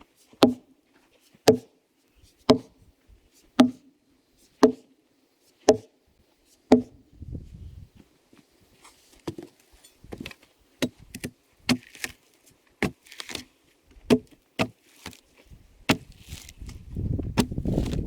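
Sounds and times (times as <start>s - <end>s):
tool chopping log bark: 0.4s - 0.7s, 1.5s - 1.7s, 2.5s - 2.7s, 3.6s - 3.8s, 4.6s - 4.9s, 5.7s - 5.9s, 6.7s - 7.0s, 10.8s - 12.2s, 12.8s - 15.2s, 15.9s - 18.0s.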